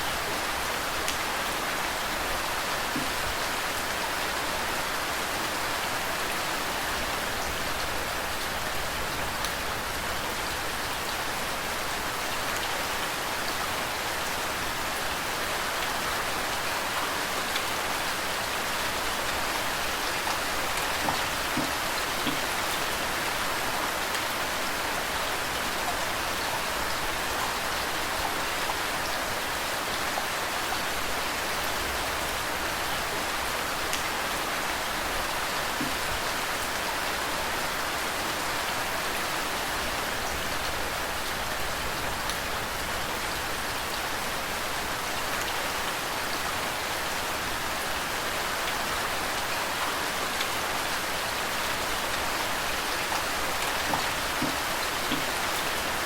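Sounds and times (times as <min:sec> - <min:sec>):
steady rain falling: 0:00.0 - 0:56.0
running water: 0:47.4 - 0:56.0.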